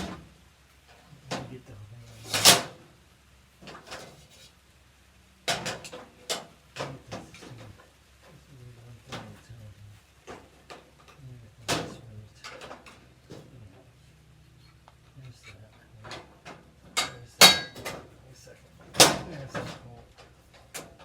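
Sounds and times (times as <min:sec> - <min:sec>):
steel parts knocking and clanking: 0:05.4 - 0:07.9, 0:10.2 - 0:13.9, 0:14.6 - 0:18.2, 0:18.8 - 0:21.0.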